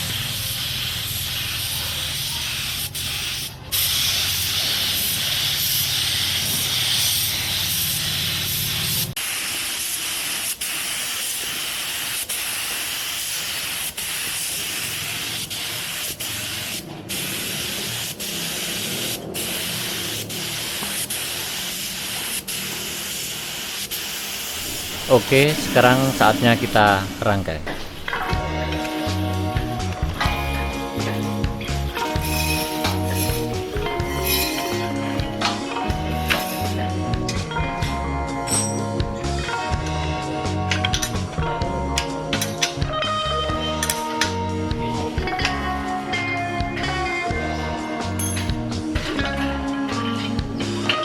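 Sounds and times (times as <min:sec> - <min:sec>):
paint spraying hiss: 0:00.0 - 0:37.6.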